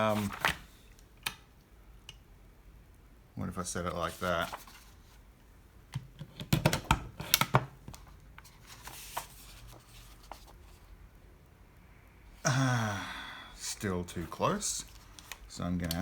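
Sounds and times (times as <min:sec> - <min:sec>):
paper rustling and ticking: 0:00.0 - 0:00.7, 0:14.2 - 0:16.0.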